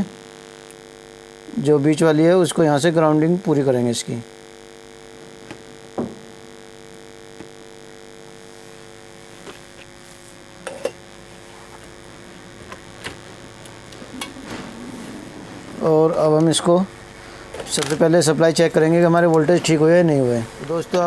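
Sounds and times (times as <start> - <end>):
electrical hum: 0.0 - 21.0.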